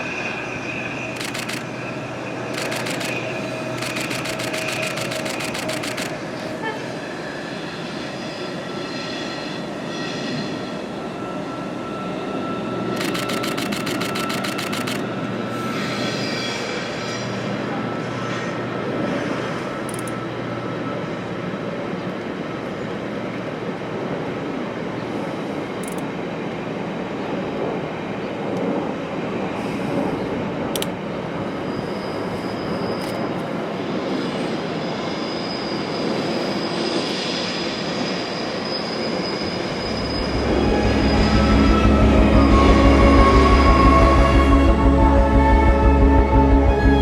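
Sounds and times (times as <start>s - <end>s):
train wheels rumbling on track: 0.0s - 11.9s, 12.8s - 47.0s
high wheel squeal: 34.2s - 44.4s
background music: 40.4s - 47.0s.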